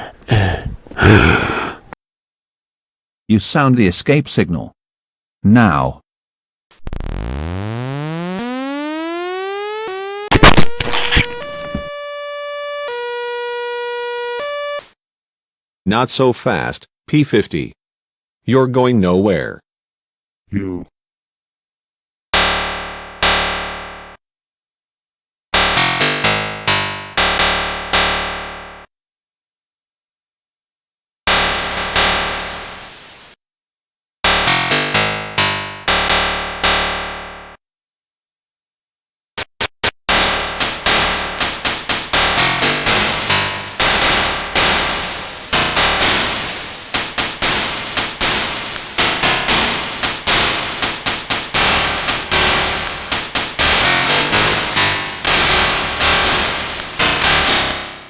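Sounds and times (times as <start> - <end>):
blast sound effects: 10.3 - 11.9.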